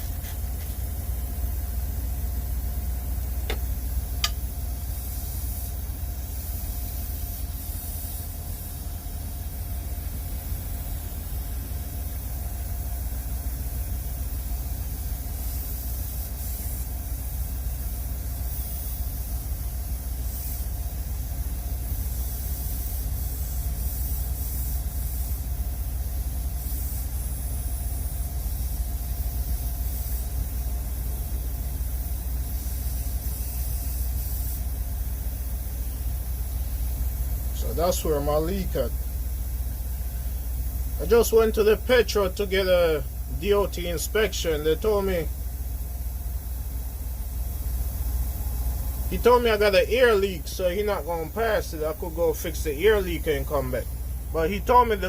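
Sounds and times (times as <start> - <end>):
high hiss: 26.4 - 55.0.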